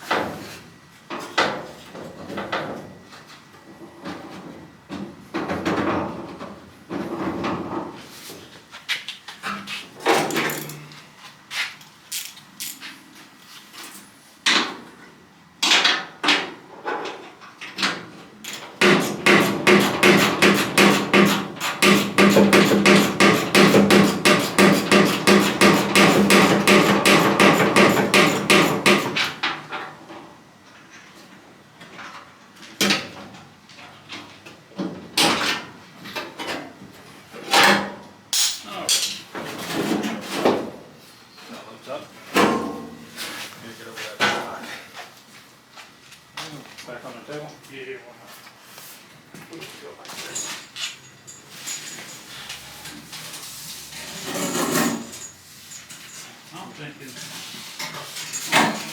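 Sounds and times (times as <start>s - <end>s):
hammer on sheet metal: 18.8s - 29.2s.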